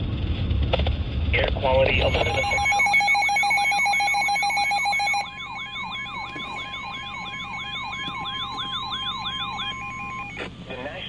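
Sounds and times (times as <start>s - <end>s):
steady high alert tone: 1.9s - 10.4s
rising siren sweep: 2.0s - 10.4s.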